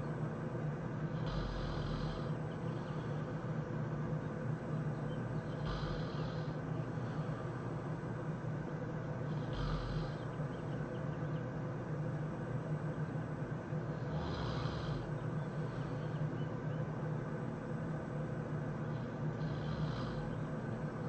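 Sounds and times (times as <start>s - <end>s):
steady low hum: 0.0s - 21.0s
man snoring: 1.1s - 2.4s, 5.5s - 7.3s, 9.3s - 10.3s, 14.0s - 15.1s, 19.4s - 20.4s.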